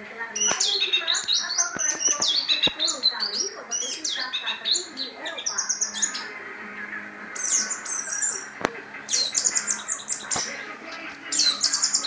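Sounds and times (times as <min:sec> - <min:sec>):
sharp clicks: 0:00.4 - 0:04.8
bird warbling high notes: 0:00.4 - 0:12.0.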